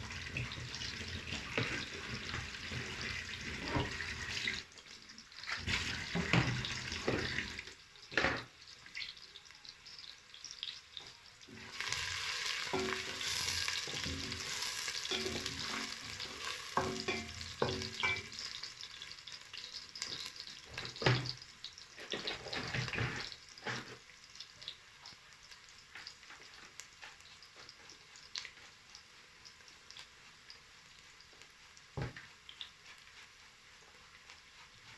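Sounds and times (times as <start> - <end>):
spoon stirring and knocking pan: 0.0 - 9.1, 11.0 - 34.9
onions sizzling in oil: 0.0 - 34.9.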